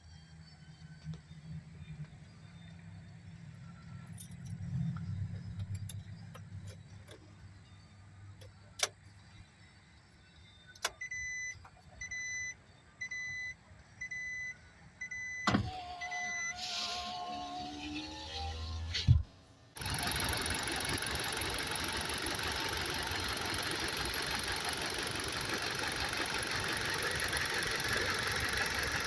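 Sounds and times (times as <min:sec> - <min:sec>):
vehicle warning chime beeping: 0:10.6 - 0:16.8
engine cranking whine: 0:15.2 - 0:29.0.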